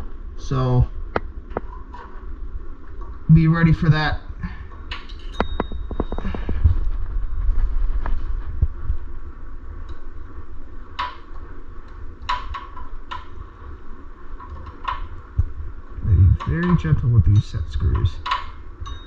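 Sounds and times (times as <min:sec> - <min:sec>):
low steady hum: 0:00.0 - 0:19.0
light metallic clinks: 0:05.0 - 0:06.3.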